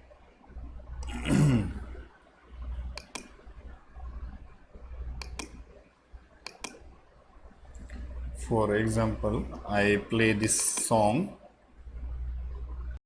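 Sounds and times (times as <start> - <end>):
faint low hum: 0.0 - 13.0
mouse double clicks: 3.0 - 3.3, 6.4 - 6.8.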